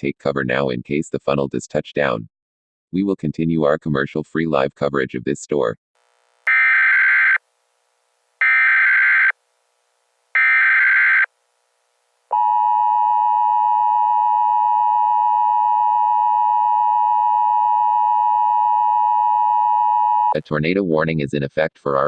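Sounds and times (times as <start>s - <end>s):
screechy data bursts: 8.4s - 9.4s, 10.4s - 11.3s.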